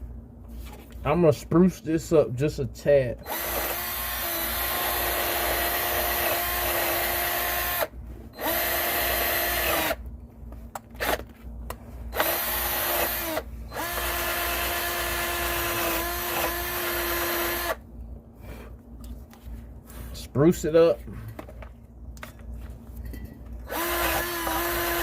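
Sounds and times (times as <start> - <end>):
power drill spinning wire brush: 12.1 - 17.8, 23.6 - 25.0.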